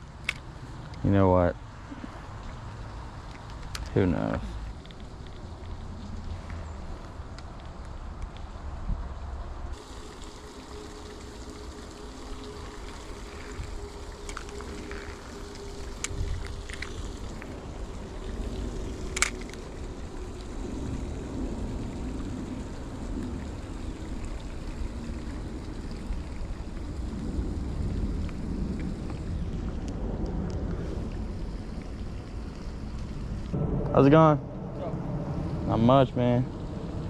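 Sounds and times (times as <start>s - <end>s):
distant engine hum: 0.0s - 37.0s
flowing water: 0.0s - 37.0s
wind buffeting microphone: 11.3s - 37.0s.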